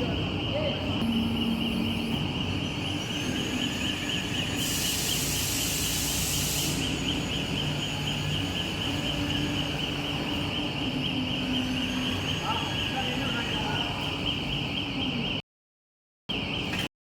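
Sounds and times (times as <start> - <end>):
hydraulic press high whine: 1.0 - 13.4
hiss: 4.0 - 7.8.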